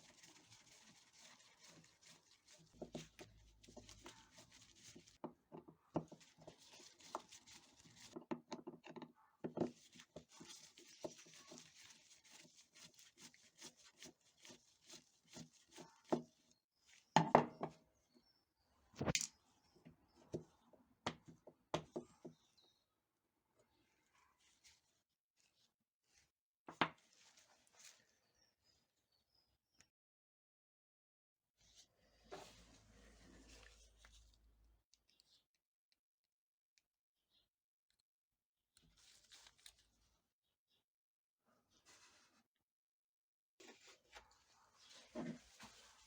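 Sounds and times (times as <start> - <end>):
rubbing or scraping: 0.0 - 5.2.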